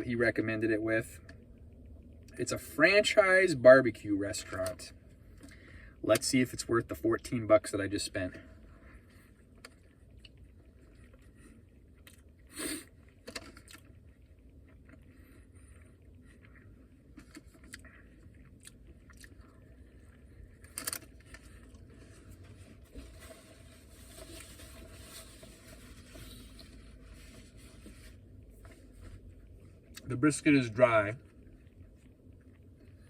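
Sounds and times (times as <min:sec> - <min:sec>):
low steady rumble: 0:00.0 - 0:33.0
man chewing food: 0:08.5 - 0:30.1, 0:31.2 - 0:33.0.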